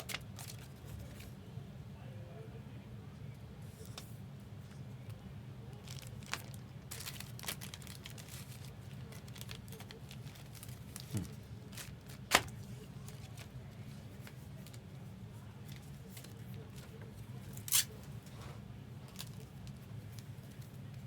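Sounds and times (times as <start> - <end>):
cards clicking and crinkling: 0.0 - 1.3, 5.8 - 13.6.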